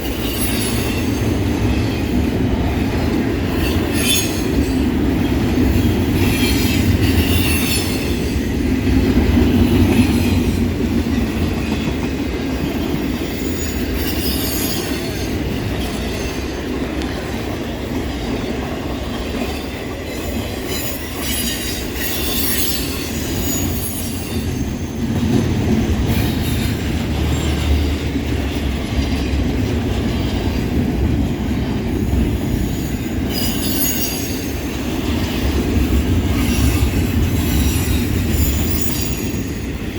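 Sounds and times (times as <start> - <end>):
freight train cars rolling: 0.0 - 39.9
high-pitched wheel squeal: 20.1 - 24.6, 33.3 - 34.6.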